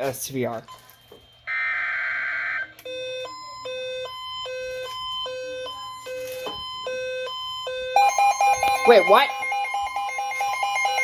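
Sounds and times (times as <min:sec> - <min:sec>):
alternating alarm tone: 0:00.7 - 0:11.0.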